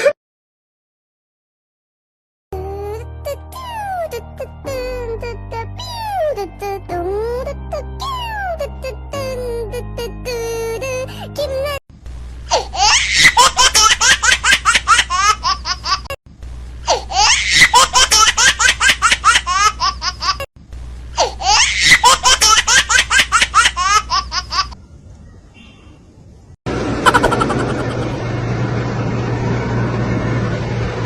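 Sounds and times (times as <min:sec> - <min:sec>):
high-pitched laughter: 0:12.5 - 0:16.2, 0:16.9 - 0:20.5, 0:21.2 - 0:24.8, 0:27.0 - 0:28.2.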